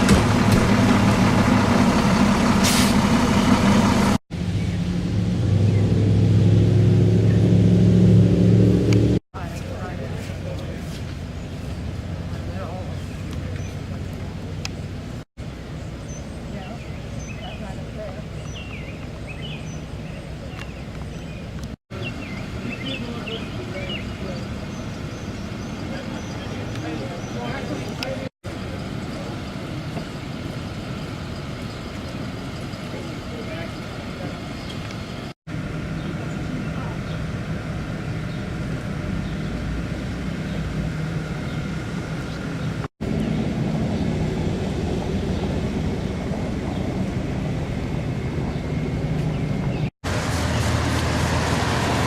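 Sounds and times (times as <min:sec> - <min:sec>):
low outdoor rumble: 0:00.0 - 0:52.0
birds chirping: 0:09.4 - 0:49.9.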